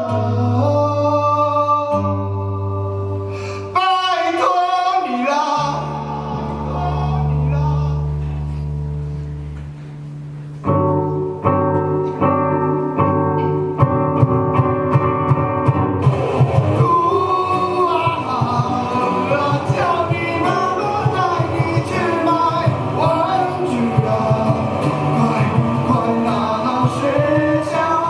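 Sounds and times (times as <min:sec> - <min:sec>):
live band with singing: 0:00.0 - 0:09.9, 0:13.0 - 0:28.0
percussion strikes: 0:13.4 - 0:28.0.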